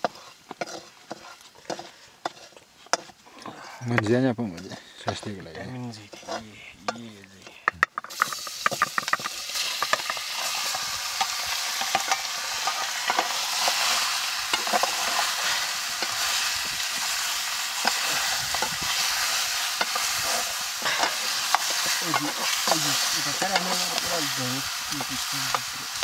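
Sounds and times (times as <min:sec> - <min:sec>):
spoon scraping and clicking: 0:00.0 - 0:03.1
meat sizzling in a pan: 0:00.0 - 0:03.2, 0:07.7 - 0:26.0.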